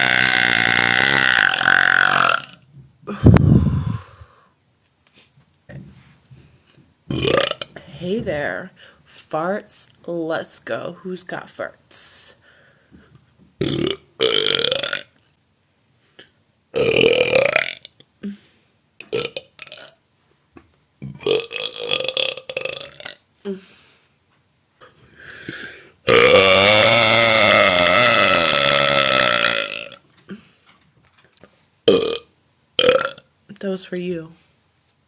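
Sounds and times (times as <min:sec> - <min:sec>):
woman belching: 0:00.0 - 0:04.0, 0:07.1 - 0:07.8, 0:13.6 - 0:15.1, 0:16.8 - 0:17.9, 0:21.1 - 0:23.2, 0:26.1 - 0:30.0, 0:31.9 - 0:33.2.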